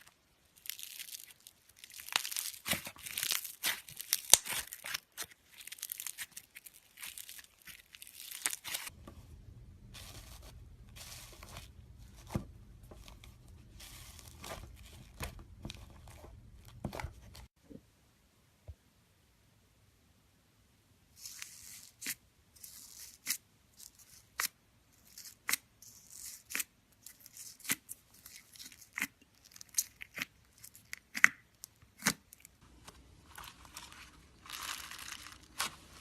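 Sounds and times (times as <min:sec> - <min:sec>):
slime crackling and tearing: 0:00.0 - 0:08.9, 0:33.2 - 0:36.0
low hum: 0:08.9 - 0:13.8.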